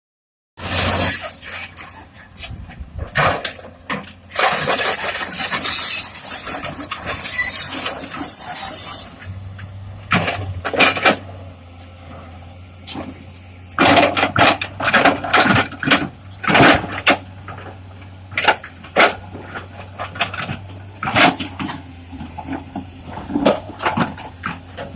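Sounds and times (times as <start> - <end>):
low engine hum: 1.8 - 4.3, 8.3 - 24.9
harsh scraping grinding on rock: 4.3 - 11.3.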